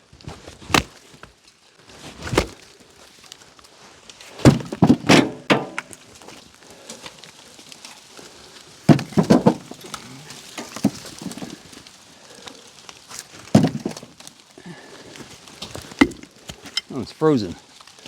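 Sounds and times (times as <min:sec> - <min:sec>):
firewood knocking: 0:04.4 - 0:06.0, 0:08.9 - 0:11.7, 0:13.4 - 0:14.2, 0:15.6 - 0:17.0.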